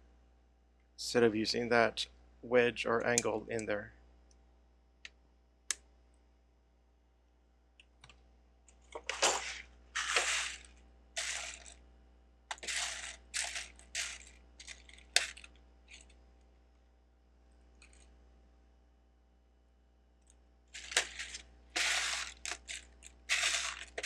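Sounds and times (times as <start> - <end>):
plastic bricks clattering: 9.0 - 11.8, 12.5 - 16.1, 20.8 - 24.0.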